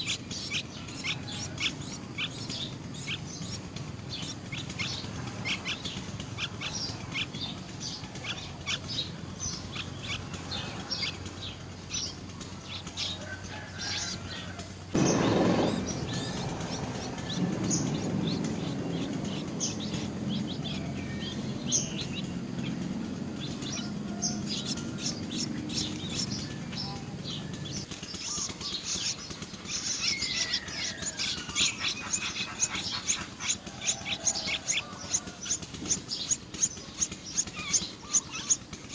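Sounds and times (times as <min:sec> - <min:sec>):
small birds chirping: 0:00.0 - 0:38.9
loud low rumble: 0:15.0 - 0:27.9.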